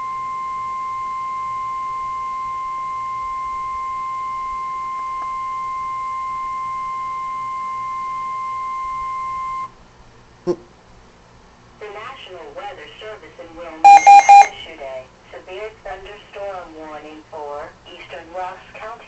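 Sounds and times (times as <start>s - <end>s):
steady alarm tone beep: 13.8s - 14.5s.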